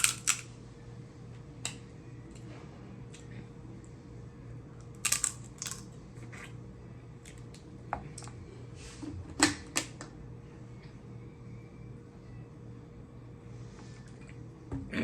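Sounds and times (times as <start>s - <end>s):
shells cracking and clicking: 0.0s - 0.5s, 4.8s - 5.9s
faint steady hum: 0.0s - 15.0s.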